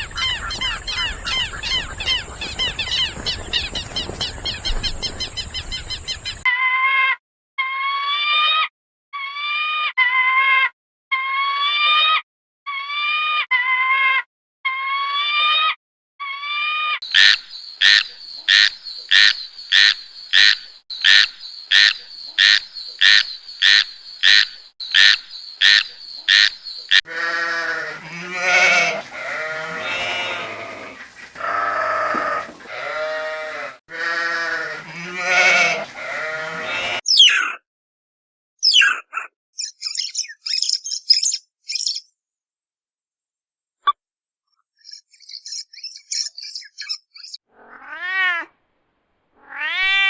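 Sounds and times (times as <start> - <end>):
rapid sharp animal calls: 17.1 - 37.5
goats bleating: 27.0 - 37.0
animal rising cries: 27.1 - 37.0.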